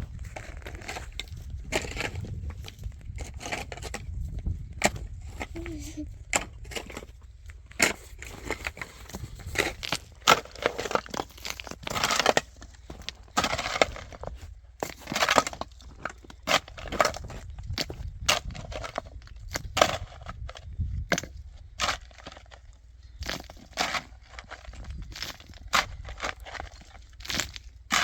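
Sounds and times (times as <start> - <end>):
crunching and crackling: 0.0 - 28.0.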